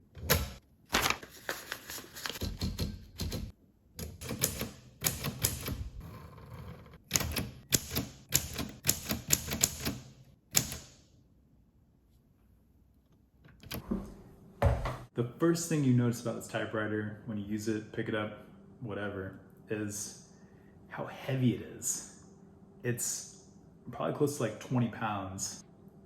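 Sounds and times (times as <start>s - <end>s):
typewriter key strikes: 7.1s - 11.0s.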